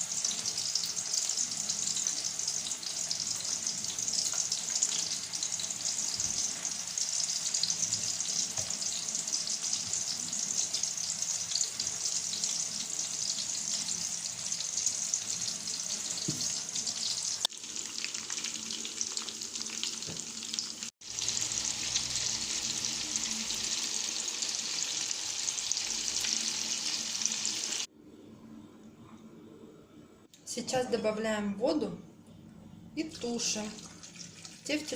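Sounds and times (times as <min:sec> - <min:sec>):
meatballs sizzling in oil: 0:00.0 - 0:27.9.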